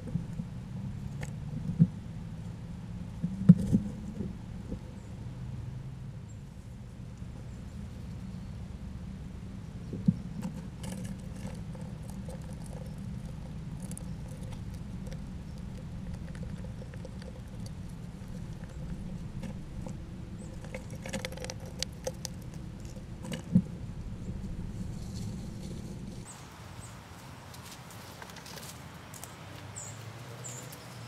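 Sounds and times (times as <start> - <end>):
low background rumble: 0.0 - 27.4
rodents scrabbling and pattering: 9.8 - 23.7, 27.5 - 31.0.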